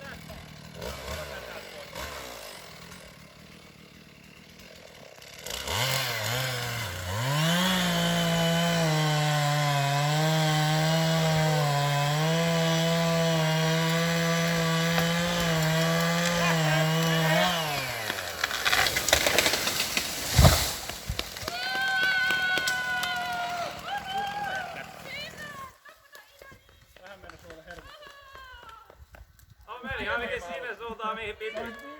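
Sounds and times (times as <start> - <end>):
chainsaw cutting tree trunk: 0.0 - 25.6
sharp wood cracks: 13.6 - 25.0.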